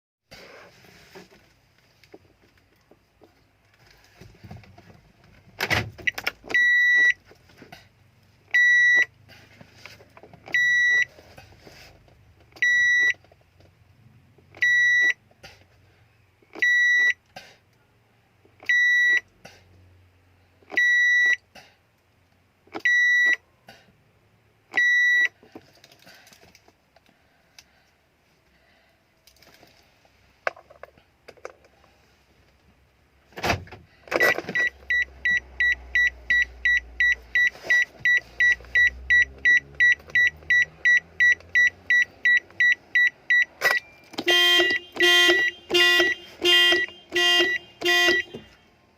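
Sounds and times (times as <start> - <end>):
car alarm short high beeps: 6.1 - 7.2, 8.5 - 9.1, 10.5 - 11.1, 12.6 - 13.2, 14.6 - 15.2, 16.6 - 17.2, 18.6 - 19.2, 20.7 - 21.4, 22.8 - 23.4, 24.8 - 25.3, 34.2 - 48.6.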